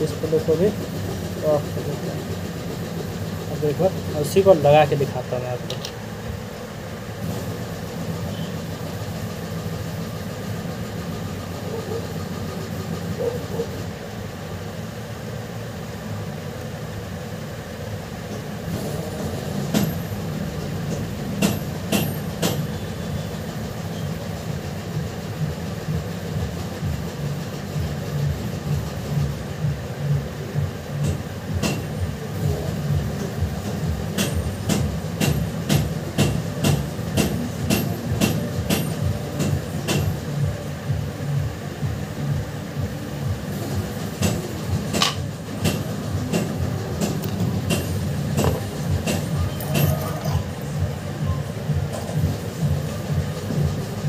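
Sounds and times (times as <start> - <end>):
hot-air blower whirring: 0.0 - 54.0.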